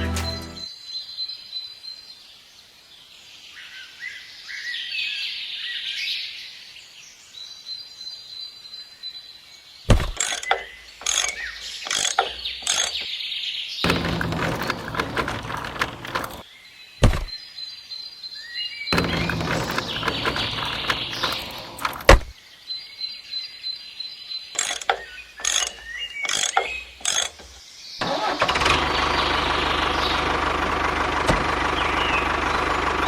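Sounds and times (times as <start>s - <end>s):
small birds chirping: 6.8s - 28.0s, 28.8s - 30.4s, 31.6s - 33.0s
sharp knocks: 9.9s - 13.1s, 17.0s - 17.3s, 19.0s - 22.3s.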